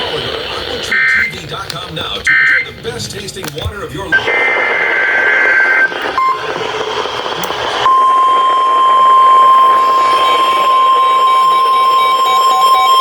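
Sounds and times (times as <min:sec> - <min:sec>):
radio hiss: 0:00.0 - 0:13.0
steady alarm tone: 0:07.8 - 0:13.0
faint repeating beeps: 0:07.9 - 0:13.0
warbling two-tone digital header: 0:07.9 - 0:13.0.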